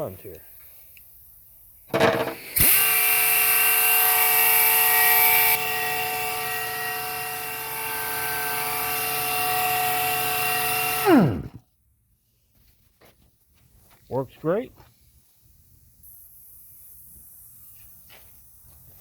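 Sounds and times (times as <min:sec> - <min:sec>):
belt sander whining: 0:02.0 - 0:11.6.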